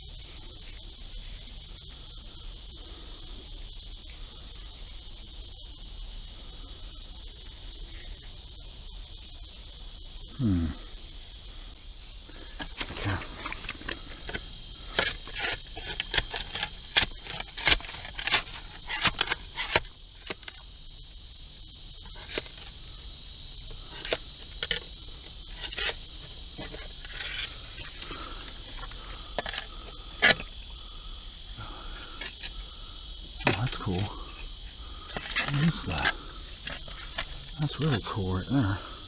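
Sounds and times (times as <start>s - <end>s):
insect chorus: 0.0s - 39.0s
tool knocking and scraping in dirt: 12.3s - 20.6s, 23.7s - 30.7s, 33.3s - 38.2s.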